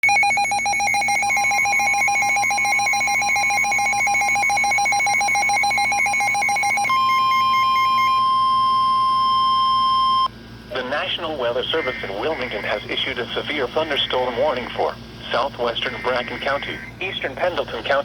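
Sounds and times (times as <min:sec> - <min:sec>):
rapid alarm beeping: 0:00.0 - 0:10.3
steady alarm tone: 0:00.0 - 0:10.3.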